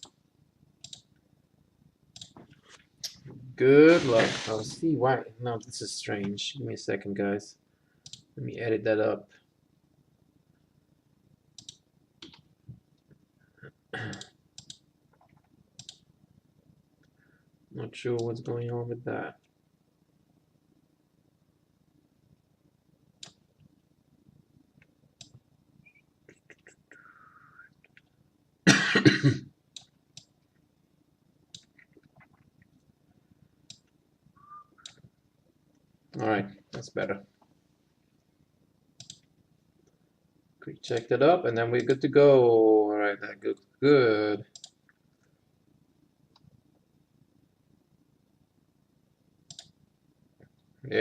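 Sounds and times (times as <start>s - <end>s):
keyboard and mouse clicks: 0.8s - 1.1s, 2.1s - 3.2s, 8.0s - 8.3s, 11.6s - 12.5s, 14.1s - 16.0s, 23.2s - 23.7s, 24.8s - 26.8s, 31.5s - 32.6s, 33.7s - 35.1s, 39.0s - 39.3s, 44.5s - 45.3s, 49.5s - 49.8s
faint clicks: 0.8s - 1.2s, 8.0s - 8.3s, 11.6s - 13.2s, 14.1s - 16.0s, 34.7s - 35.1s, 39.0s - 40.0s, 44.5s - 45.4s, 49.5s - 49.8s
person coughing: 13.9s - 14.3s, 28.7s - 29.5s.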